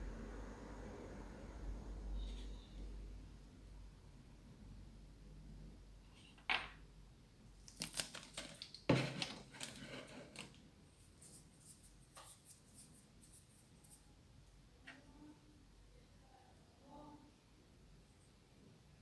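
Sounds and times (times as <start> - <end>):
clicks and scrapes of small objects: 7.6 - 14.0.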